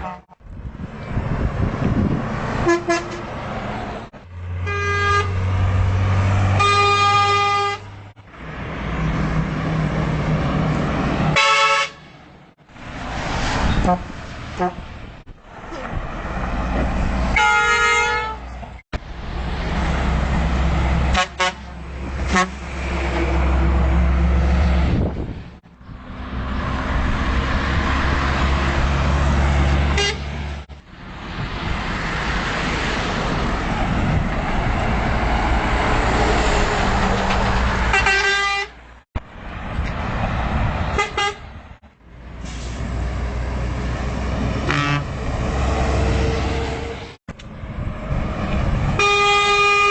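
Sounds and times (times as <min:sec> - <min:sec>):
truck horn blasts: 0:00.0 - 0:00.4, 0:02.6 - 0:03.3, 0:04.6 - 0:05.5, 0:06.6 - 0:08.0, 0:11.3 - 0:12.1, 0:13.8 - 0:14.9, 0:17.3 - 0:18.6, 0:21.1 - 0:22.7, 0:29.9 - 0:30.4, 0:37.9 - 0:38.8, 0:40.9 - 0:41.6, 0:44.6 - 0:45.2, 0:49.0 - 0:49.9
trucks passing: 0:00.0 - 0:49.9.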